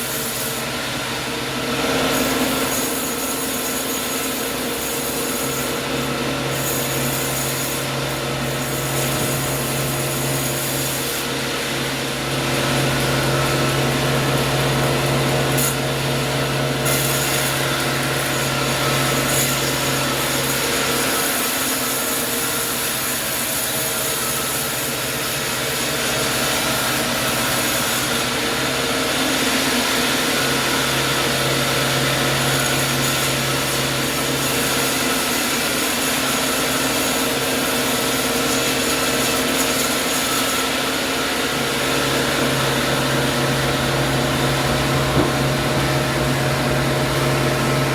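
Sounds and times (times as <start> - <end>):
saw cutting through wood: 0.0 - 47.9
motor humming: 42.0 - 47.9.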